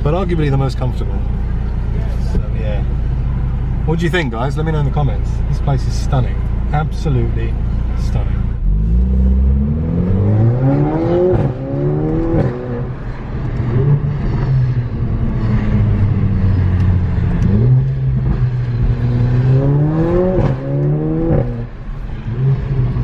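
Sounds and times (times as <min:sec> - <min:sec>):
car engine accelerating hard: 0:05.2 - 0:23.0.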